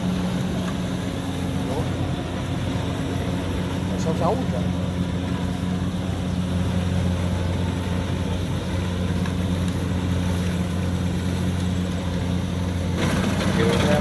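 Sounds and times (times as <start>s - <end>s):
combine harvester engine drone: 0.0s - 14.0s.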